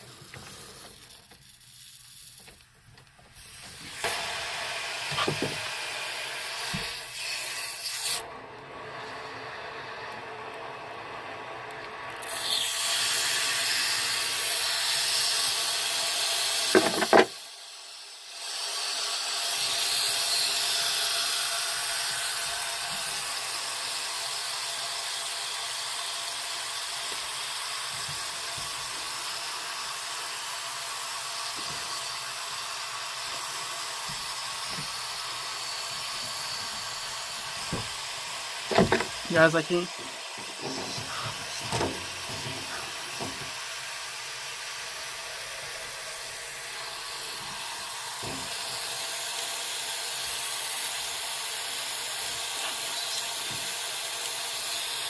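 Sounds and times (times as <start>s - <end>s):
water rushing through drain valve: 19.6s - 55.0s.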